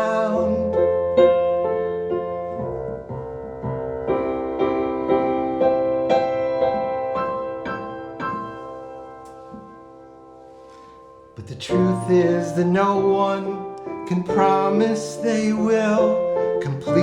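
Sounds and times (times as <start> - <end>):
piano playing: 0.0 - 17.0.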